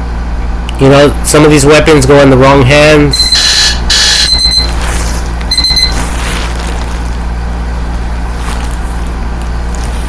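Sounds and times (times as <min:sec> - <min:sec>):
steady low hum: 0:00.0 - 0:10.0
high electronic beep: 0:03.1 - 0:06.4.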